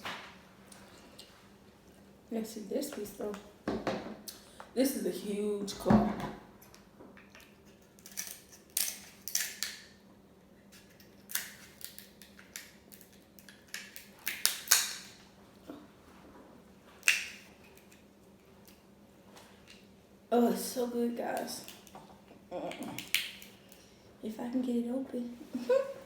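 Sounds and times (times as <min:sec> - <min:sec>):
crab shell cracking: 0:07.3 - 0:10.0, 0:10.7 - 0:15.2, 0:17.0 - 0:18.0, 0:21.4 - 0:22.0, 0:22.7 - 0:23.8.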